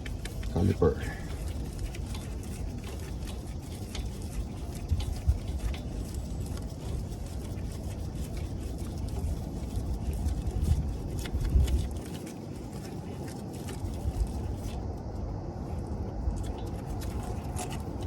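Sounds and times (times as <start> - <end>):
steady low rumble: 0.0 - 18.0.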